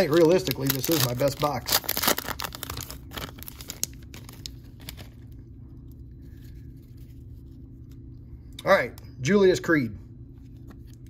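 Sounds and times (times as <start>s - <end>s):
wrapper being torn and crinkled: 0.0s - 5.3s.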